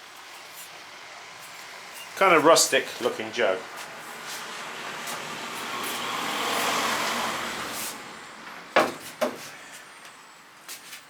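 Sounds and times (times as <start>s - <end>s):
vehicle rushing past: 0.8s - 10.5s
short knocks: 8.8s - 9.5s.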